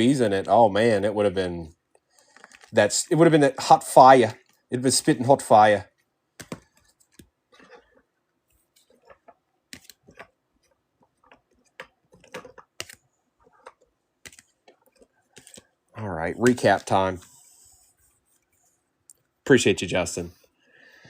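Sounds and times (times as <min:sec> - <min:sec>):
soft rustling of cards: 0:01.8 - 0:20.6
cards clicking and tapping: 0:06.3 - 0:08.0, 0:08.7 - 0:17.1.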